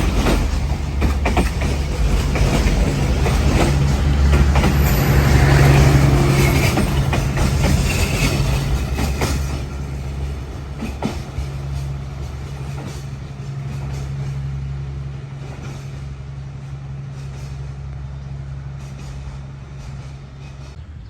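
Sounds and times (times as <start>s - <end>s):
train wheels knocking: 0.0s - 14.6s.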